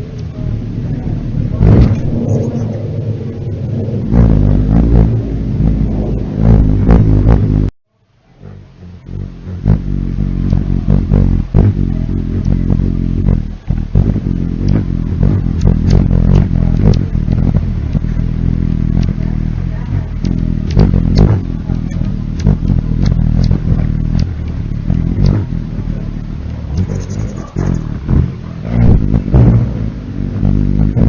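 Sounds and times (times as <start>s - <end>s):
hummingbird wings humming: 0.0s - 7.6s, 8.3s - 29.3s.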